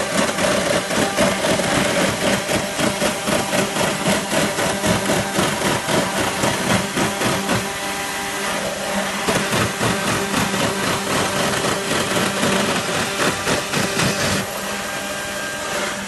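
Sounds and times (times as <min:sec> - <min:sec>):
motorised tool running: 0:00.0 - 0:16.0.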